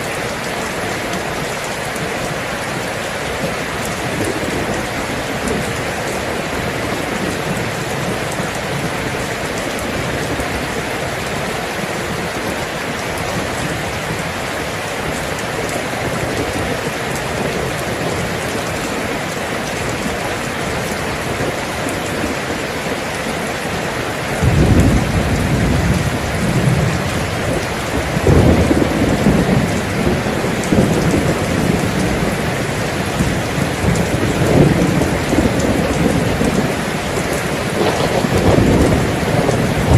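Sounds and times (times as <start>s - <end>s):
steady rain falling: 0.0s - 39.9s
deep thunder rumble: 24.4s - 39.9s.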